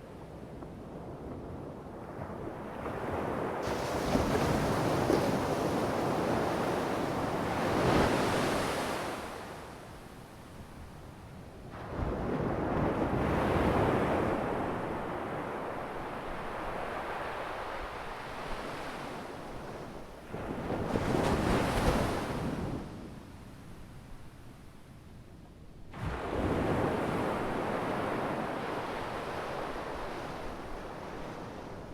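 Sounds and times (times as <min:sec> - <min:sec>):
ocean waves breaking on shore: 0:02.6 - 0:10.0, 0:11.7 - 0:22.9, 0:26.0 - 0:31.9.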